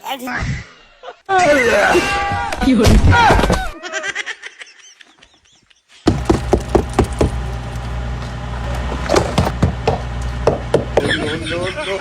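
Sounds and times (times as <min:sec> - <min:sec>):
rapid sharp knocks: 0:06.1 - 0:07.6
steady low hum: 0:06.1 - 0:11.0.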